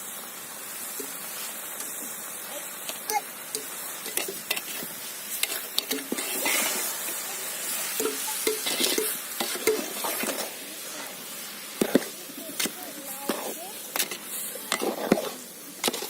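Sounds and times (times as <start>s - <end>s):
food sizzling: 0.0s - 16.0s
spoon scraping a pan: 3.5s - 11.1s, 11.8s - 16.0s.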